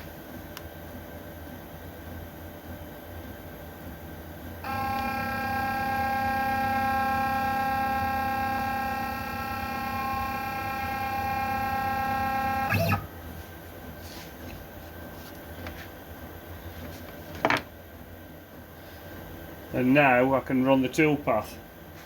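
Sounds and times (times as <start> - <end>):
router motors whining: 4.6 - 13.1.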